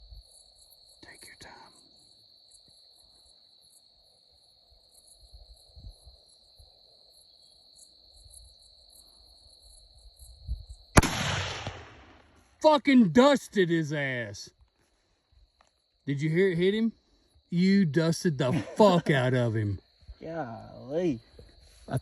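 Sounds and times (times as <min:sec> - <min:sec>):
rifle shot with echo: 0:11.0 - 0:12.4.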